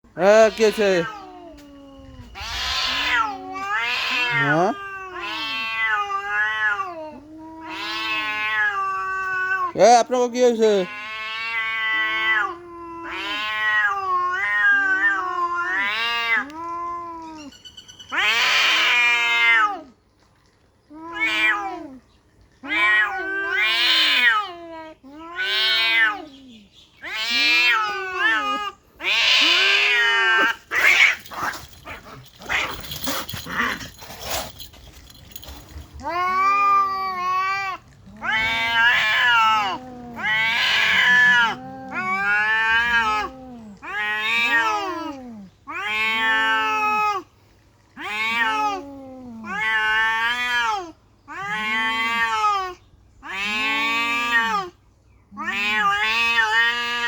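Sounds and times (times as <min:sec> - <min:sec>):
cat meowing: 0:00.2 - 0:09.8, 0:10.8 - 0:17.5, 0:18.1 - 0:19.9, 0:27.0 - 0:47.2, 0:48.0 - 0:57.0
scratchy rustling: 0:30.7 - 0:36.0.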